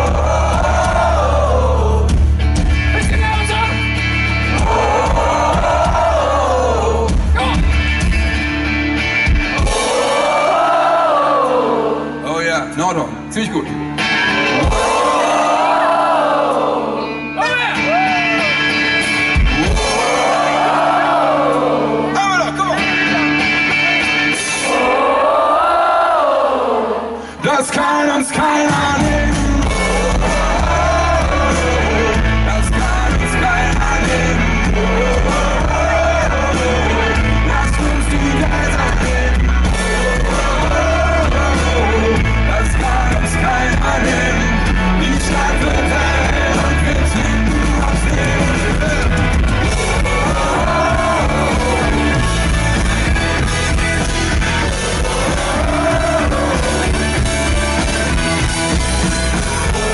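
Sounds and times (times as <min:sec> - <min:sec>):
live rock band playing: 0:00.0 - 0:12.3, 0:13.0 - 0:25.1, 0:27.4 - 0:59.9
person singing: 0:27.0 - 0:52.6, 0:54.4 - 0:58.1, 0:59.3 - 0:59.9.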